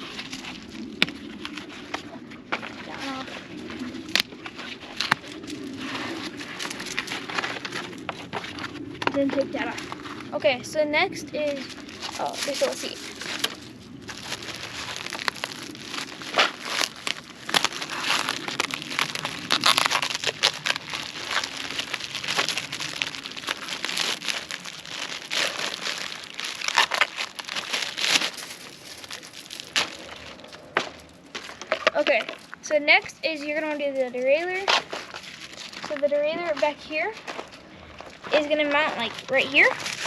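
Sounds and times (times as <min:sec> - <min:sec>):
packaging crinkling: 0:00.0 - 0:10.4, 0:11.3 - 0:32.6, 0:33.4 - 0:40.0.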